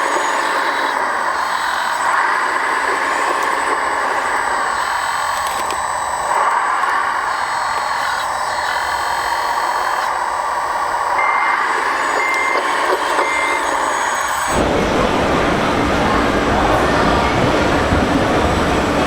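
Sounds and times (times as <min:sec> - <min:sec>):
electric drive whirring: 0:00.0 - 0:19.0
reversing beeper: 0:10.9 - 0:19.0.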